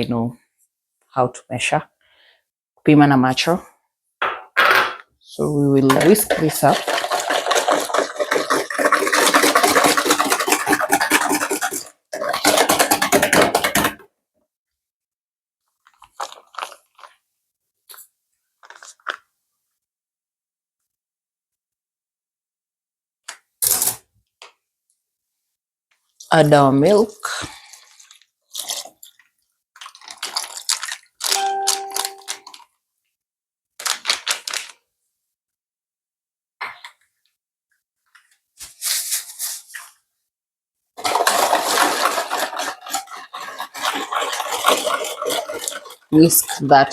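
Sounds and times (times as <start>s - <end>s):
whisk clattering in a bowl: 5.9s - 14.0s, 41.0s - 46.9s.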